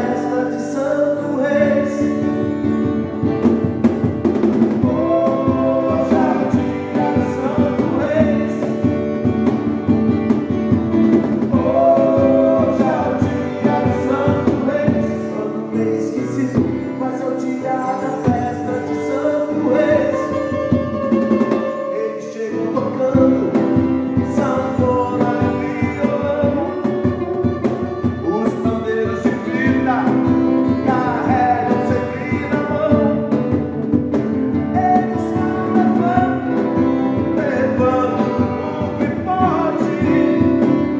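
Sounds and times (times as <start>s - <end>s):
pop rock song: 0.0s - 40.9s.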